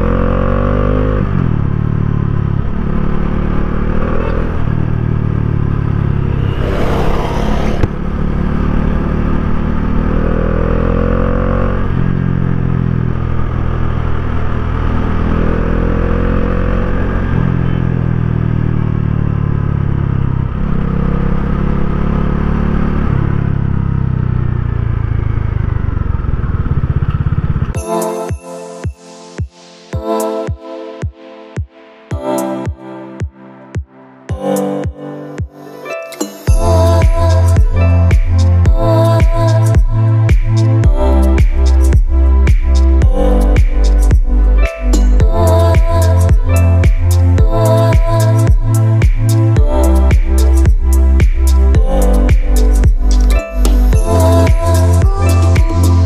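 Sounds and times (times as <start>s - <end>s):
motorcycle engine accelerating: 0.0s - 27.8s
loud rushing noise: 5.8s - 8.8s.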